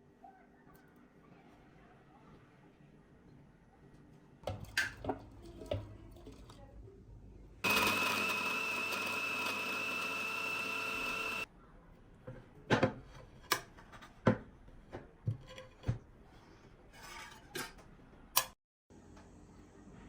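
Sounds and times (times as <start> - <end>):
kitchen appliance motor whining: 7.6 - 11.5.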